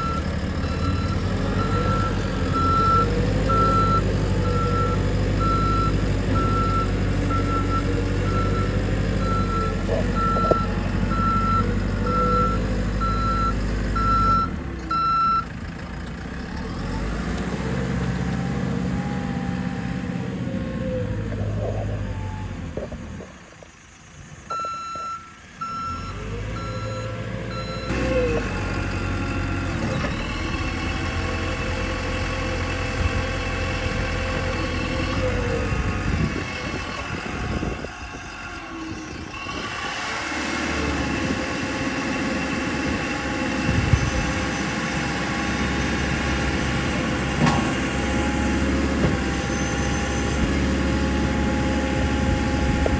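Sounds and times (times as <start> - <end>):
reversing alarm beeping: 0.0 - 15.5, 24.5 - 28.1
diesel engine revving: 0.0 - 52.9.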